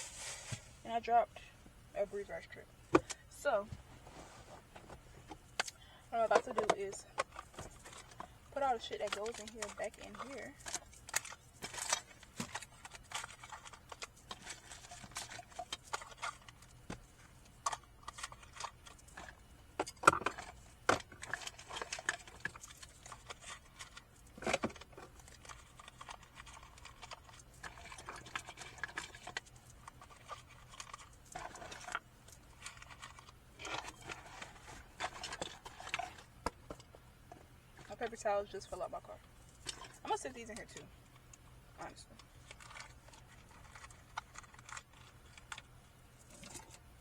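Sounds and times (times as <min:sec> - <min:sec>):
plastic items clicking and knocking: 0:05.2 - 0:38.2, 0:42.1 - 0:46.8.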